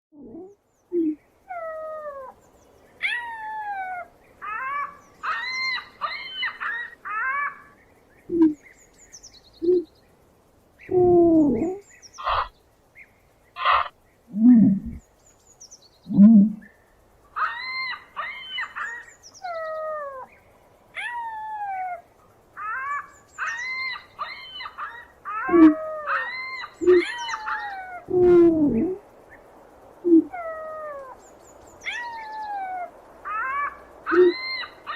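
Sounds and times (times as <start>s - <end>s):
ostrich whistled chirps: 9.6s - 9.9s
ostrich low grunting calls: 13.6s - 15.0s, 16.1s - 16.7s, 25.5s - 25.9s, 26.8s - 27.1s.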